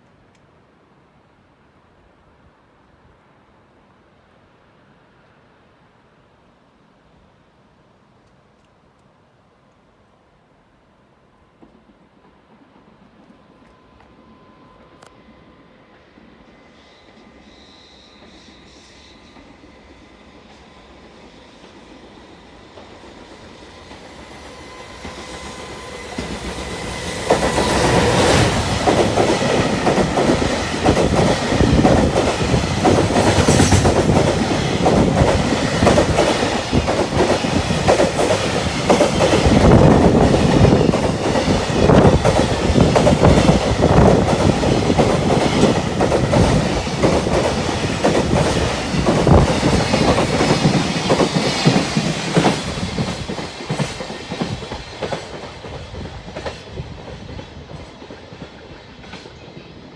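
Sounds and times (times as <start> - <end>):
freight train rumble: 18.1 - 59.9.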